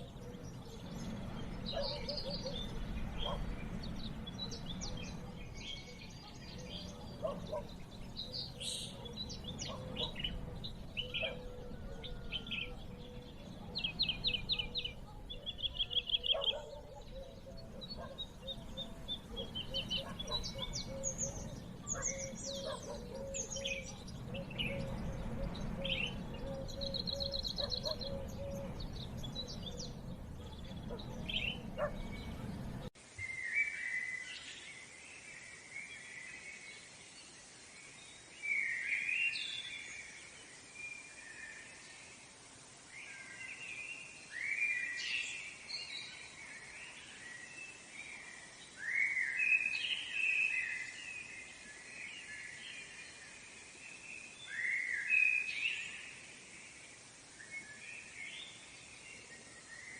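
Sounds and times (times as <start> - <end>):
low background rumble: 0.0 - 16.2, 17.3 - 33.0
birds chirping and trilling: 0.0 - 37.3.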